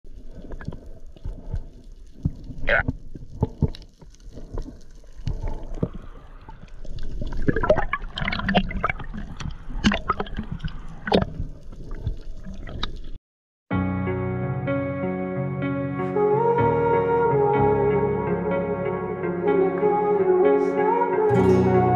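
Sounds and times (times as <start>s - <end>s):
gurgling and sloshing water: 0.1s - 13.2s
sharp clicks and pops underwater: 0.1s - 13.2s.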